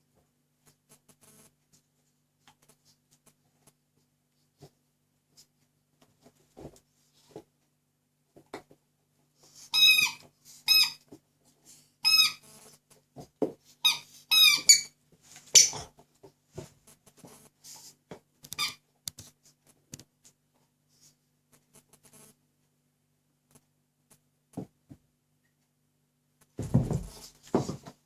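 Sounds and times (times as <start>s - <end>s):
squeaky toy squeaking: 9.7s - 11.0s, 12.0s - 12.4s, 13.8s - 14.9s, 18.5s - 18.8s.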